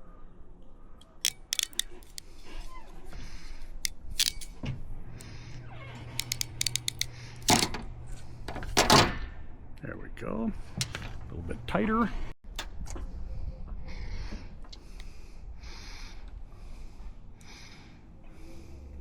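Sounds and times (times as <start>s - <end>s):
plastic connector clicks and snaps: 1.1s - 2.2s, 6.2s - 7.7s.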